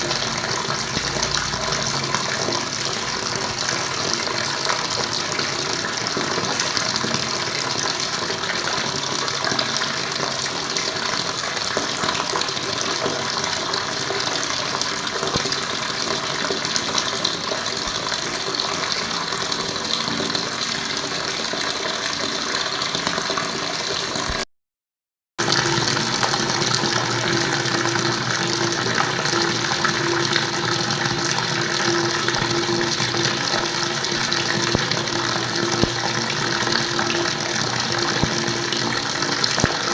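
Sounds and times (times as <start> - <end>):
water running and splashing: 0.0 - 24.4, 25.4 - 39.9.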